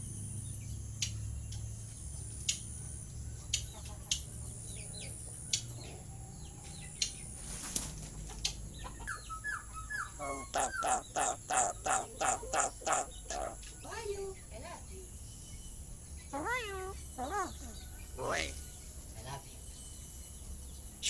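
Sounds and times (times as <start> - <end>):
starling whistling and calling: 9.1 - 14.0, 16.4 - 18.0.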